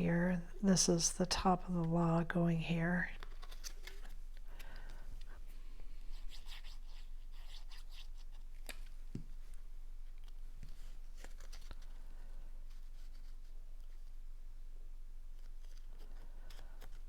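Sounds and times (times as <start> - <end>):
paper rustling and scraping: 10.1 - 12.0, 15.3 - 17.0.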